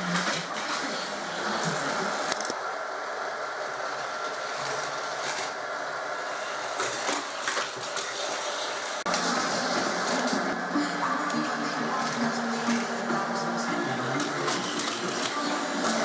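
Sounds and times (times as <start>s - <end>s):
toy track booster whirring: 0.0s - 16.0s
plastic toy cars clacking: 3.7s - 5.6s, 6.3s - 10.6s, 11.2s - 13.1s, 13.9s - 16.0s.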